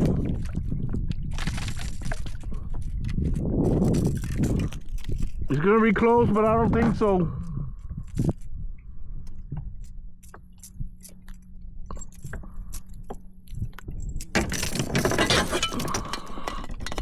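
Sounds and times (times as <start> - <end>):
rustling noise: 1.2 - 5.5
clicks and clinks of gear: 1.3 - 5.6, 8.0 - 8.5, 9.3 - 17.0.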